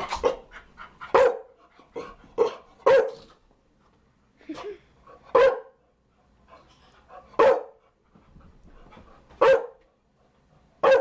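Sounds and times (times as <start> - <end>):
dog barking: 1.1 - 1.6, 2.4 - 3.3, 5.3 - 5.8, 7.4 - 7.8, 9.4 - 9.8, 10.8 - 11.0.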